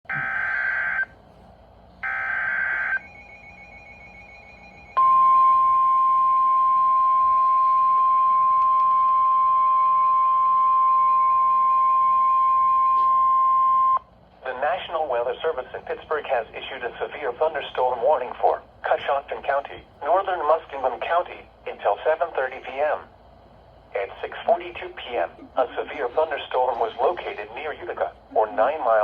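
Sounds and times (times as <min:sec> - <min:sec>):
steady warning alarm tone: 0:00.1 - 0:01.2, 0:02.0 - 0:14.1.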